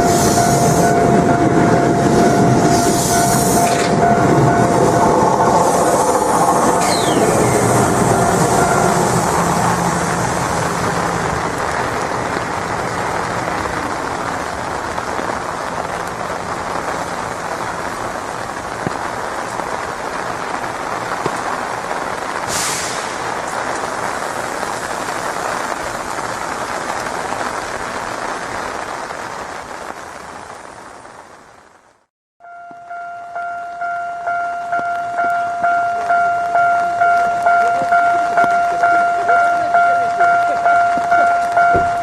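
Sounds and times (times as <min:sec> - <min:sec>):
passing train hum: 0:00.0 - 0:26.7, 0:32.4 - 0:42.0
heavy rain hiss: 0:00.0 - 0:32.1
short sharp high hiss: 0:22.5 - 0:23.2.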